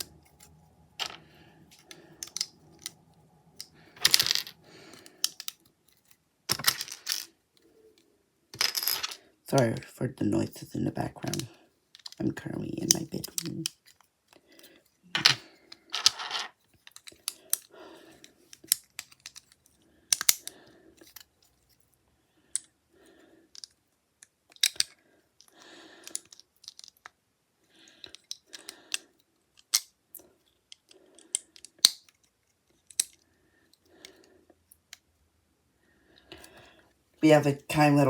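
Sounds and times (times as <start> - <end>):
plastic bricks clicking together: 2.2 - 3.0, 3.6 - 5.6, 6.5 - 7.3, 11.3 - 12.2, 12.8 - 14.0, 15.2 - 17.7, 18.5 - 21.3, 23.6 - 27.2, 29.6 - 30.0, 30.6 - 33.2.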